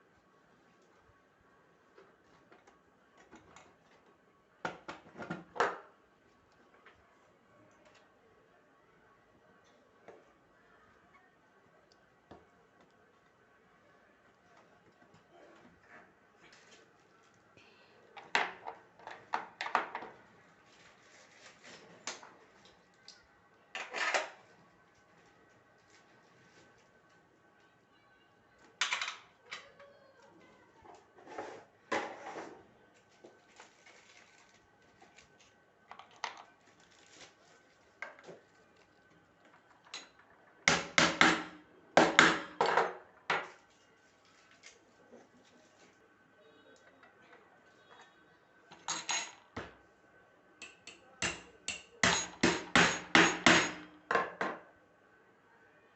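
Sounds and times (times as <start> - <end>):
hard parts knocking and clattering: 50.7 - 54.6.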